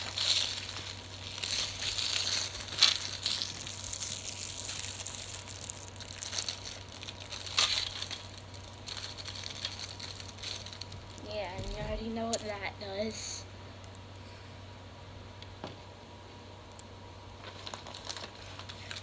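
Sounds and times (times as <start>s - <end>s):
plastic mesh toy crinkling: 0.0s - 12.6s, 17.4s - 19.0s.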